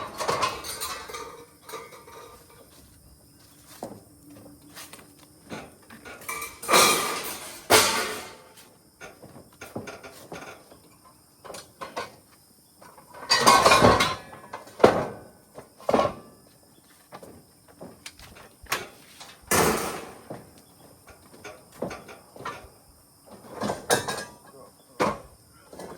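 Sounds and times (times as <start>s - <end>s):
scrap metal clattering: 0.0s - 3.0s, 4.9s - 10.8s, 12.9s - 15.2s, 18.3s - 20.5s.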